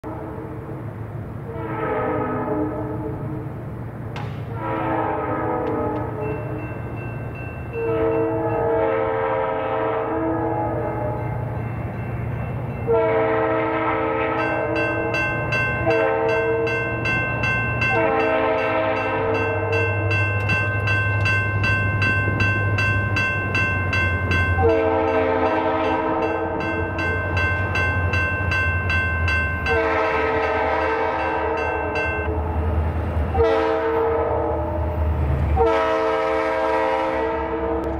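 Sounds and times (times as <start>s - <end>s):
locomotive horn blasts: 0.0s - 3.6s, 4.4s - 6.6s, 7.7s - 11.4s, 12.8s - 17.0s, 17.8s - 20.6s, 24.5s - 27.2s, 29.6s - 32.6s, 33.3s - 35.0s, 35.6s - 37.9s
bell ringing: 6.2s - 8.4s, 14.4s - 25.2s, 25.8s - 29.9s, 31.2s - 32.3s.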